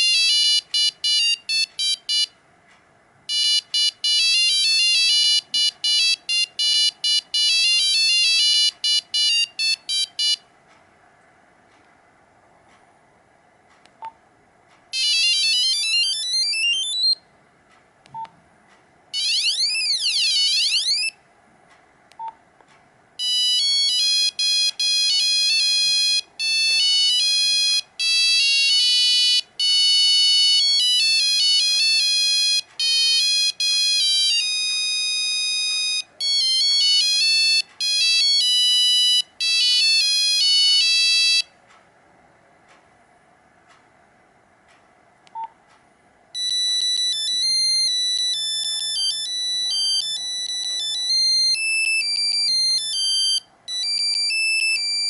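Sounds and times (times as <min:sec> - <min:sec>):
mobile phone ringtones: 0:00.0 - 0:02.3, 0:03.3 - 0:10.4, 0:15.0 - 0:17.2, 0:19.2 - 0:21.2, 0:23.2 - 0:41.5, 0:46.4 - 0:55.0.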